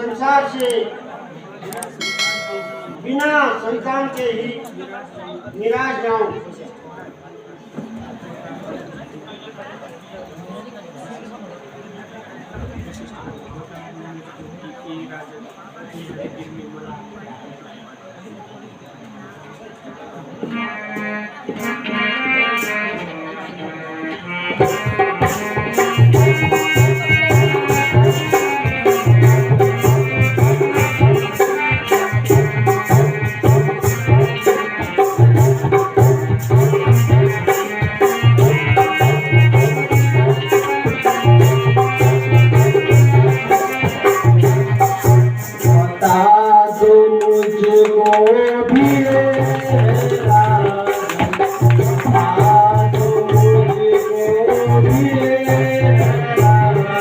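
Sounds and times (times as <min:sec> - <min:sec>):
sustained melody line: 0:02.0 - 0:03.1.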